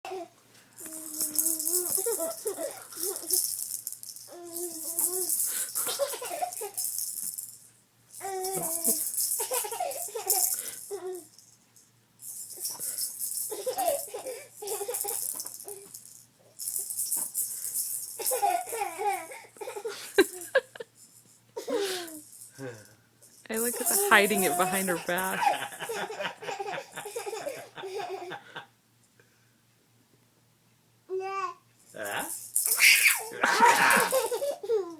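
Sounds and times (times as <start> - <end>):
toy ball rattling: 0.8 - 19.4, 20.1 - 21.4, 22.0 - 26.2, 31.8 - 34.6
young child laughing: 19.6 - 20.8, 23.6 - 28.6, 32.8 - 34.9.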